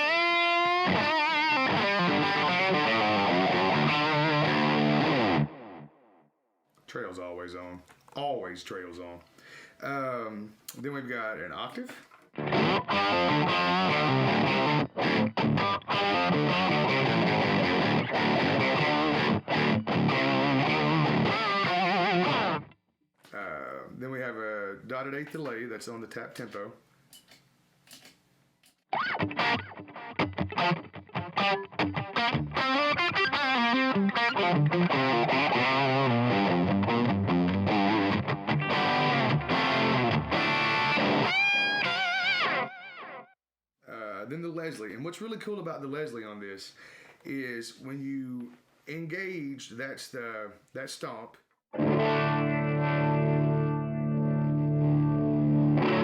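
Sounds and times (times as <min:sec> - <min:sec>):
distorted electric guitar: 0:00.0 - 0:06.2, 0:12.4 - 0:22.7, 0:28.9 - 0:43.3, 0:51.8 - 0:56.0.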